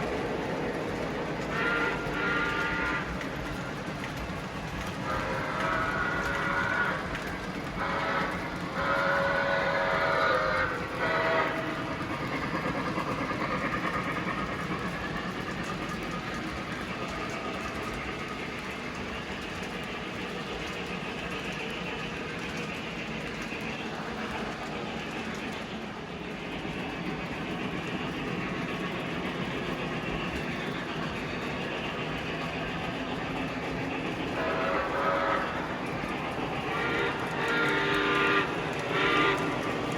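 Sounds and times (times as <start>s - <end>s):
train rumbling along track: 0.0s - 39.9s
model train horn blasts: 1.5s - 3.1s, 5.0s - 7.2s, 7.8s - 11.9s, 34.3s - 35.9s, 36.6s - 39.9s.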